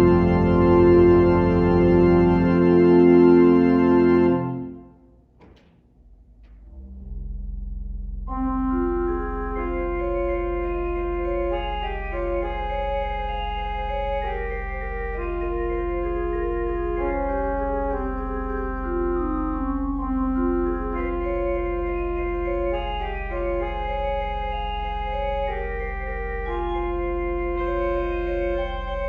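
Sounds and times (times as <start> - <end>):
organ music: 0.0 - 5.6, 8.2 - 29.0.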